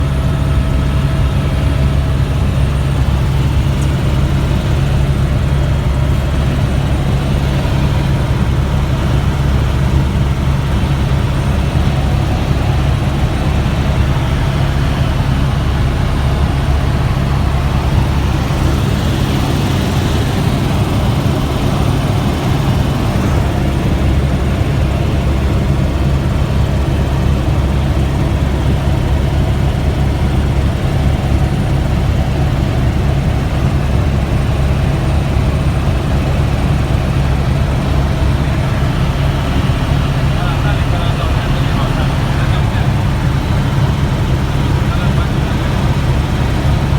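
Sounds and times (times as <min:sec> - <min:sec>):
helicopter engine and rotor drone: 0:00.0 - 0:46.9.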